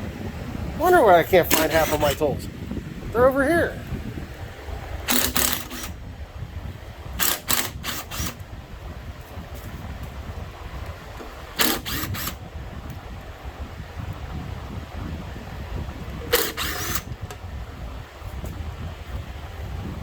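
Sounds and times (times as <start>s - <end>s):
low steady rumble: 0.0s - 20.0s
sharp clicks: 1.5s - 2.2s, 5.1s - 6.0s, 7.2s - 8.4s, 11.6s - 12.4s, 16.3s - 17.4s.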